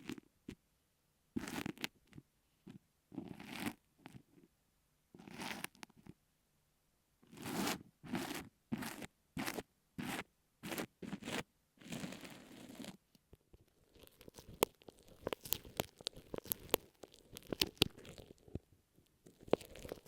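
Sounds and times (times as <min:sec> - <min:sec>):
ear pick scraping sand: 0:07.3 - 0:13.0
glue stick clicks and crackles: 0:13.9 - 0:18.4, 0:19.3 - 0:20.0.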